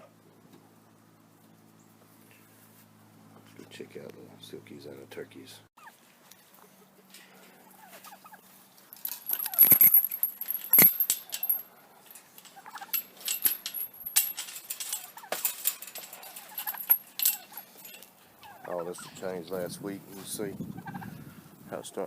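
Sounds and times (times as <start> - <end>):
turkeys gobbling: 5.8 - 8.6, 18.4 - 19.2.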